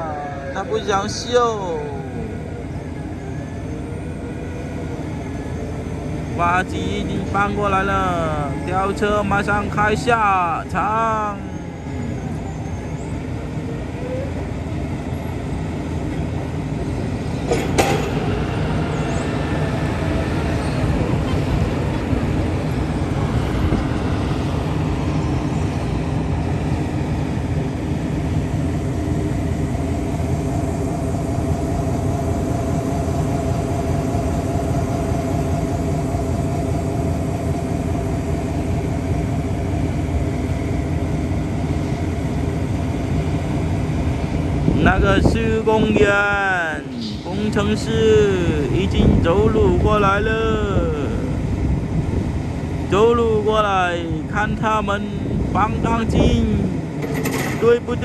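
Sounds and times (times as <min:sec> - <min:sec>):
diesel engine rumbling: 0:00.0 - 0:58.0
sharp metallic clank: 0:17.5 - 0:18.3.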